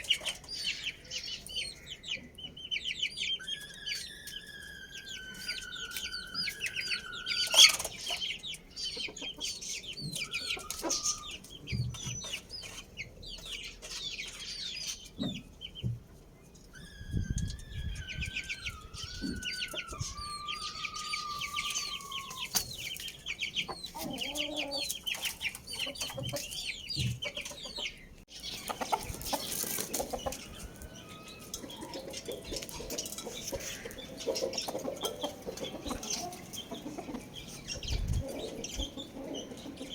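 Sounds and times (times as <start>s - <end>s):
small birds chirping: 0.0s - 39.9s
roosters crowing: 3.4s - 8.0s, 16.8s - 22.8s, 28.4s - 39.9s.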